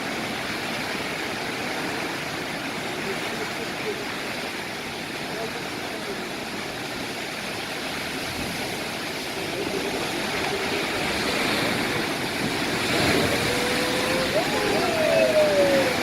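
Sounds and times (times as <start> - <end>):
ocean waves breaking: 8.3 - 16.0.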